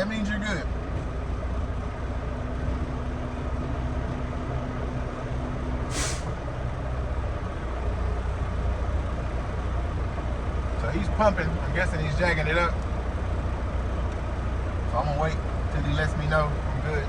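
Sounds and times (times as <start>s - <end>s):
diesel truck engine idling: 0.0s - 17.0s
air brake hiss: 5.9s - 6.4s.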